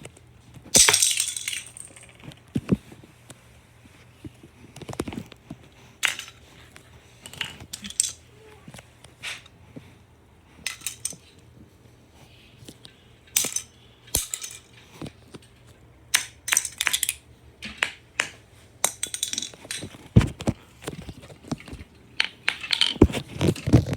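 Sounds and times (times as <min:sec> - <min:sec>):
plastic bricks clattering: 0:00.8 - 0:02.3, 0:06.0 - 0:06.5, 0:07.2 - 0:08.3, 0:10.6 - 0:11.3, 0:13.3 - 0:15.5, 0:16.1 - 0:23.9.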